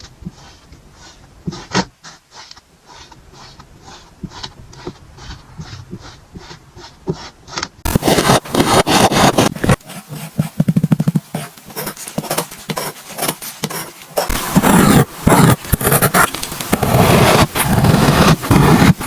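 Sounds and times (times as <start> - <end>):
kinetic sand scraping: 0.0 - 19.0.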